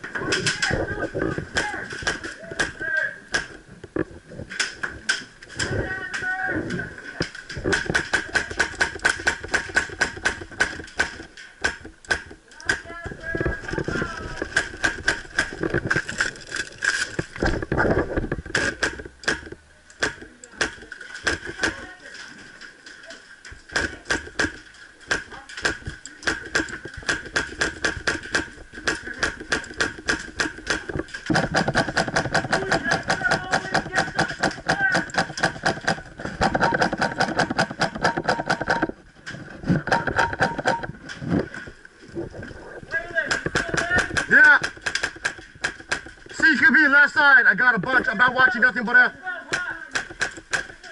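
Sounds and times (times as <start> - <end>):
airsoft shots clicking: 23.7 - 38.9, 43.3 - 46.2, 49.5 - 50.9.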